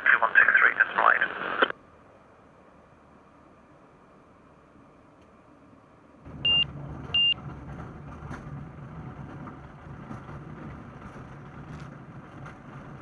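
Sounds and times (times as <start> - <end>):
aircraft engine drone: 0.0 - 9.5.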